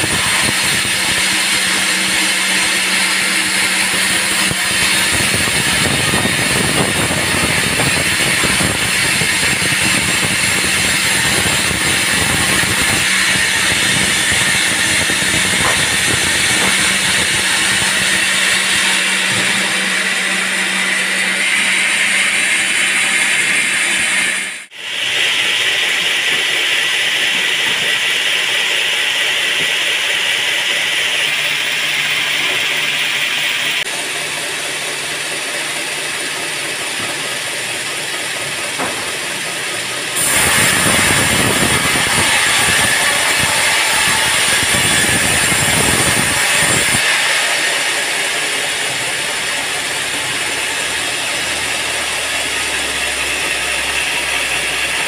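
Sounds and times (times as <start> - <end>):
band saw cutting log: 0.0 - 55.0.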